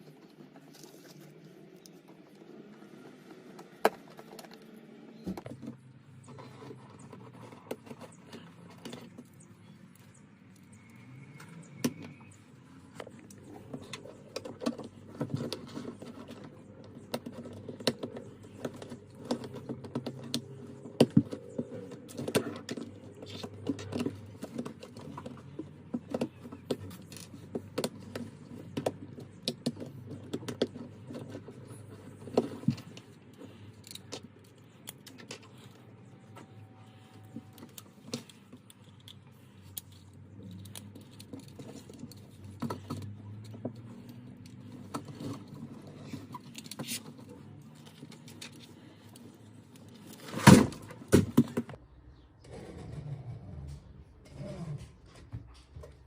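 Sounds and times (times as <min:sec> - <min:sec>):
plastic pieces clicking and rattling: 0:37.2 - 0:50.4.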